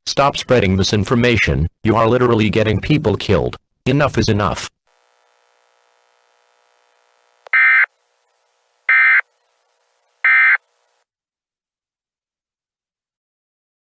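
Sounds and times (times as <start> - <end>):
digital data tone bursts: 7.5 - 11.0.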